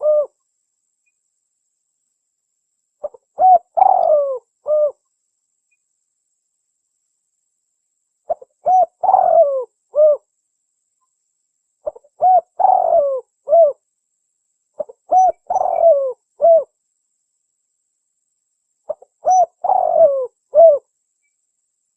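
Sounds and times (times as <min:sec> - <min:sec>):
dove cooing: 0:00.0 - 0:00.4, 0:03.0 - 0:05.0, 0:08.3 - 0:10.2, 0:11.8 - 0:13.8, 0:14.8 - 0:16.7, 0:18.9 - 0:20.9.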